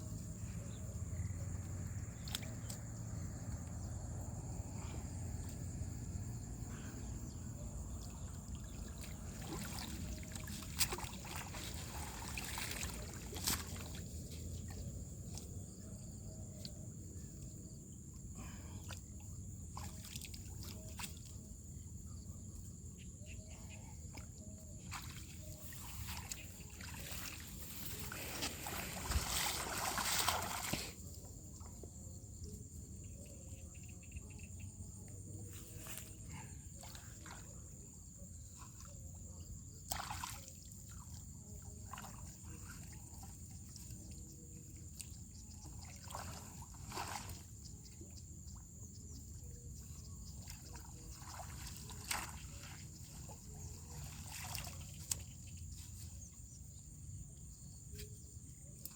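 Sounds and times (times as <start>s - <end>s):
water sloshing and trickling: 0.0s - 33.5s, 34.8s - 58.9s
small splashes: 7.9s - 15.4s, 19.7s - 21.4s, 24.8s - 31.7s, 39.8s - 48.1s, 50.2s - 56.1s
rush of splashing water: 8.6s - 14.0s, 26.8s - 31.0s, 45.9s - 47.4s.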